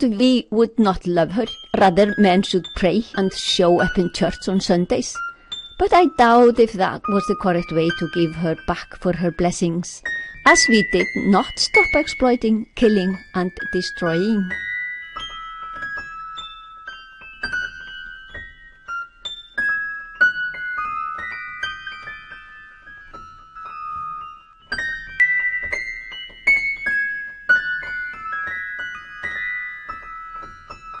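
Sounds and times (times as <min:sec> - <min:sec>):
slow keyboard melody: 0:13.2 - 0:31.0.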